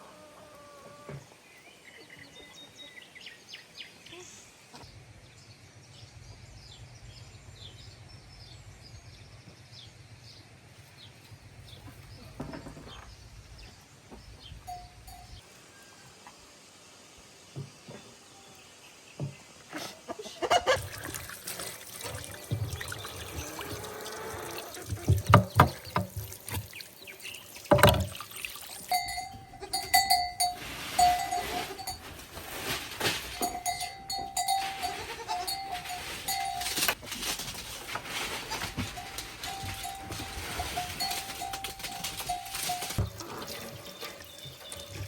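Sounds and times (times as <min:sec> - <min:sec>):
irregular knocks and thumps: 0:24.9 - 0:26.7, 0:27.6 - 0:28.3
sheep: 0:28.9 - 0:45.0.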